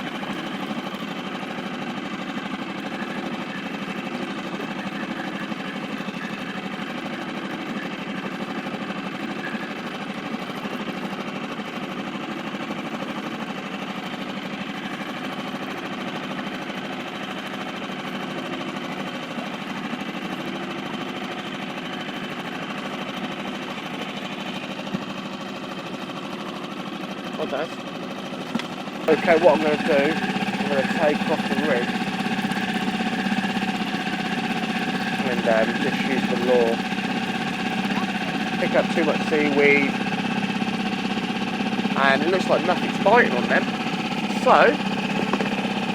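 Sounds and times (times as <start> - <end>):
outboard motor running: 0.0 - 45.9.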